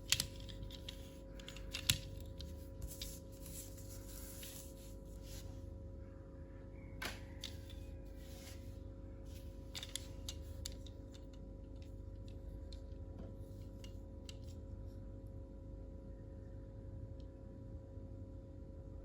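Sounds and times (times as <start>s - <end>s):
plastic toy parts clicking: 0.0s - 3.2s, 9.7s - 12.8s
faint hum: 0.0s - 19.0s.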